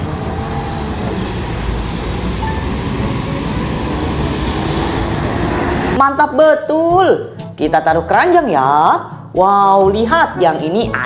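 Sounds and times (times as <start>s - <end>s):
road traffic rumble and hiss: 0.0s - 6.0s
vehicle engine running: 0.0s - 6.0s.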